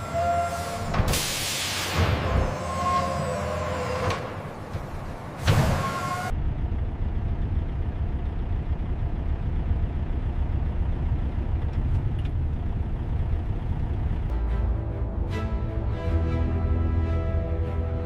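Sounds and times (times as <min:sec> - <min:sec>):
low motor rumble: 0:06.1 - 0:18.0.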